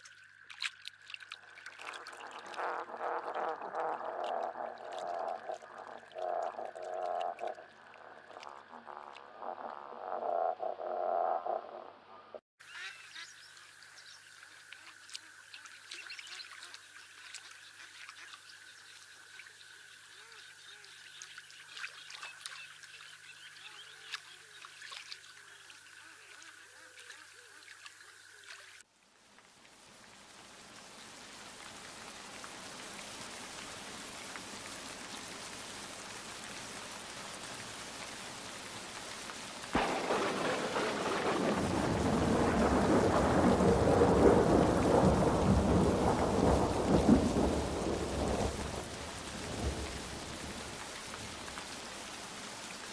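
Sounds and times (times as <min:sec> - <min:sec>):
rain pattering: 0:00.0 - 0:10.2, 0:29.0 - 0:52.9
thunder crack: 0:39.8 - 0:50.6
thunder rumble: 0:39.8 - 0:50.8.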